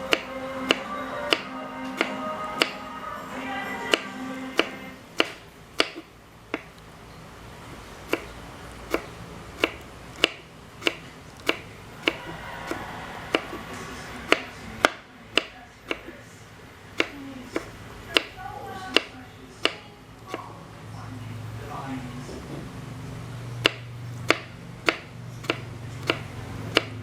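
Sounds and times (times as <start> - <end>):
knife chopping on cutting board: 0.1 - 2.8, 4.6 - 6.7, 8.1 - 13.6, 14.3 - 16.1, 17.0 - 18.3, 23.6 - 27.0.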